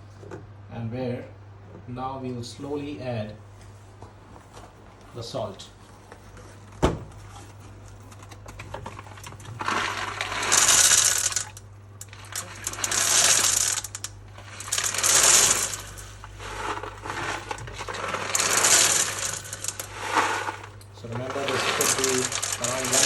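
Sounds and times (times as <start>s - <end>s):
coarse salt pouring through funnel: 9.1s - 23.0s.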